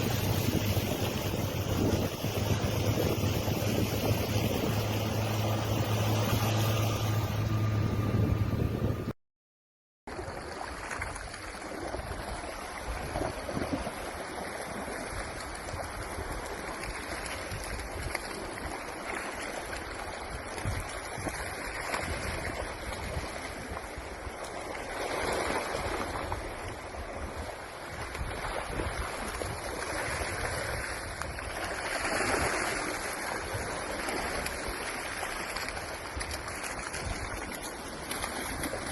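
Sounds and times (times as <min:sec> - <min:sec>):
floodwater rushing: 0:00.0 - 0:09.0, 0:10.1 - 0:38.9
loud low hum: 0:00.0 - 0:09.2
wind noise: 0:00.0 - 0:09.2.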